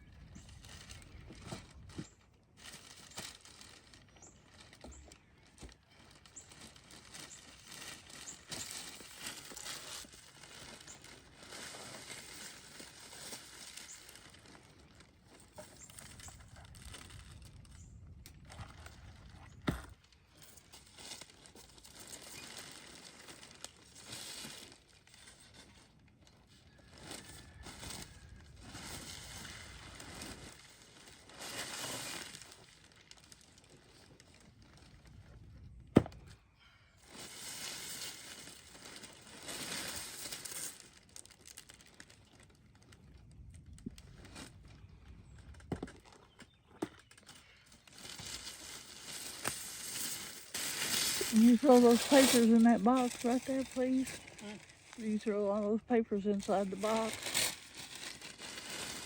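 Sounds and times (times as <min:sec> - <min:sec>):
paper rustling and crumpling: 0:00.1 - 0:36.2, 0:37.1 - 0:59.0.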